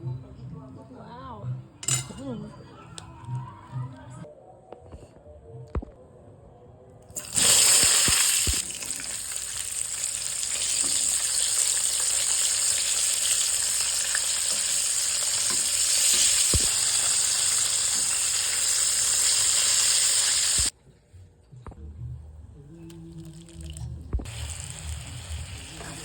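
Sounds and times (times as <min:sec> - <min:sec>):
food sizzling in hot oil: 0:07.2 - 0:20.7, 0:24.2 - 0:26.0.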